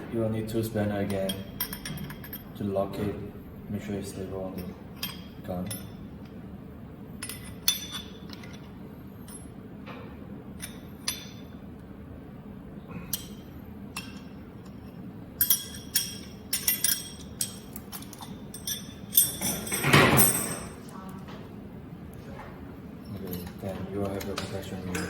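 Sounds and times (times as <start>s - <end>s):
low machine hum: 0.0s - 25.0s
spanners clinking on metal: 14.0s - 20.8s.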